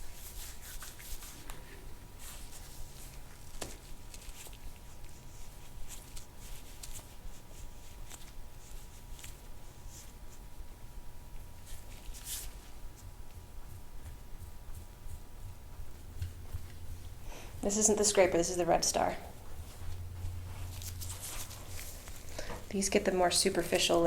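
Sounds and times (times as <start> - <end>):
hands rubbing skin: 0.0 - 1.6, 19.4 - 22.3.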